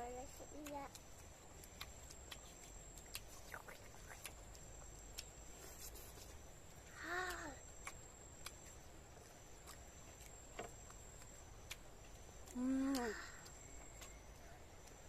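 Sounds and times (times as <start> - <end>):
person eating and chewing: 0.4 - 15.0
short hummed vocal sound: 12.5 - 13.4.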